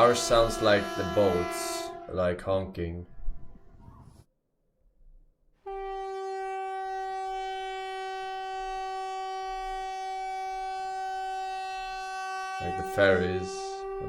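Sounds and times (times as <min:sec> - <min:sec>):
steady emergency alert tone: 0:00.0 - 0:02.4, 0:08.7 - 0:14.0.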